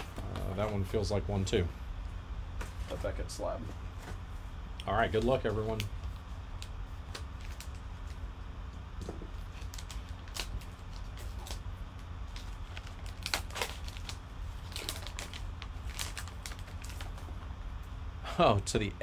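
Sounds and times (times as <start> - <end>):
low hum: 0.0 - 19.0
plastic packaging crinkling: 9.4 - 17.4.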